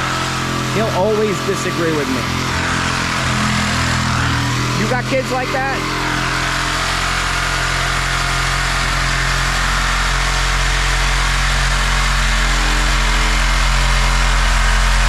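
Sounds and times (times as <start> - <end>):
reciprocating saw cutting steel: 0.0 - 15.0.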